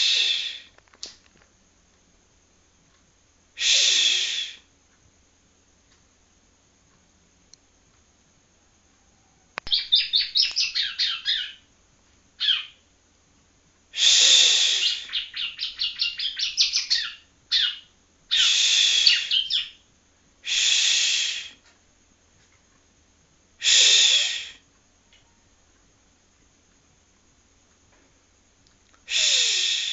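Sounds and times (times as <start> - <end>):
bird harsh rasping buzzes: 0.0 - 0.7, 3.6 - 4.7, 9.7 - 11.7, 12.4 - 12.8, 14.0 - 19.8, 20.4 - 21.6, 23.6 - 24.6, 29.1 - 29.9.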